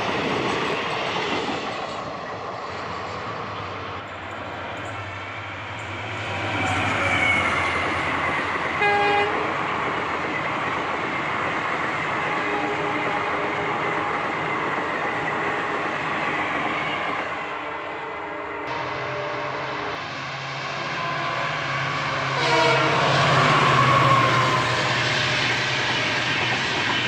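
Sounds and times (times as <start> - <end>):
train passing with rushing rumble: 0.0 - 27.0
train horn blast: 8.8 - 9.5, 12.4 - 13.8, 18.7 - 20.0, 20.8 - 24.6.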